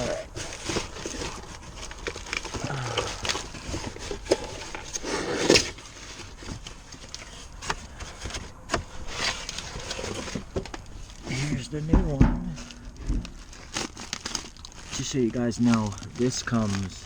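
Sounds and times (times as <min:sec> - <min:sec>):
parts clicking and rattling: 0:00.0 - 0:17.0
loud clunk: 0:11.9 - 0:13.6.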